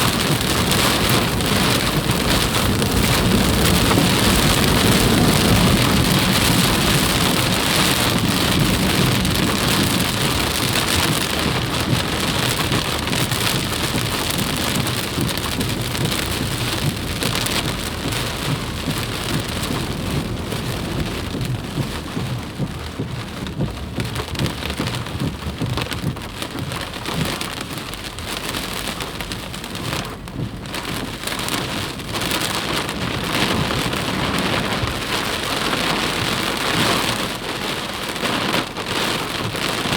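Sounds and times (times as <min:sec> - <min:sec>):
floodwater rushing: 0:00.0 - 0:30.3.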